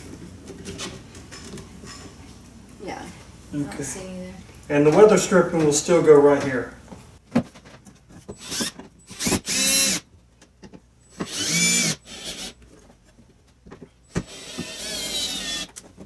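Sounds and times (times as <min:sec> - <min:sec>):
power drill motor whining: 0:08.3 - 0:10.0, 0:11.1 - 0:12.6, 0:14.1 - 0:15.8.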